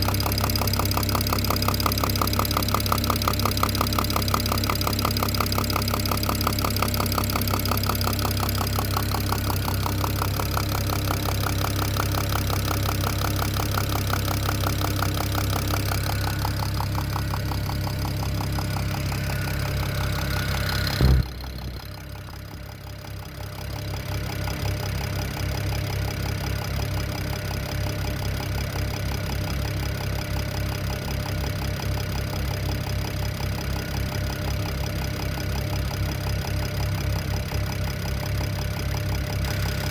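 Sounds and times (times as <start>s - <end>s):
car engine idling with knock: 0.0s - 39.9s
loud thump: 20.9s - 21.9s.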